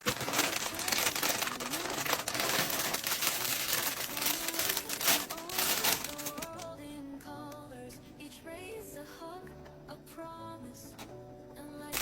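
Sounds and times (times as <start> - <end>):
packaging crinkling: 0.0 - 6.7.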